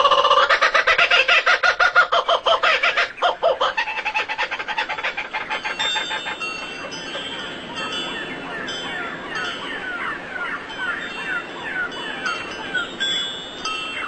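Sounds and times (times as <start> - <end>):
bird harsh calls: 0.0 - 14.0.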